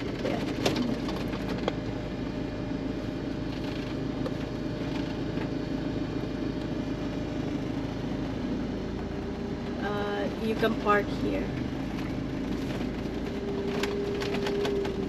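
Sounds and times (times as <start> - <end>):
car engine hum from inside cabin: 0.0 - 15.0
tyres rolling on road: 0.0 - 15.0.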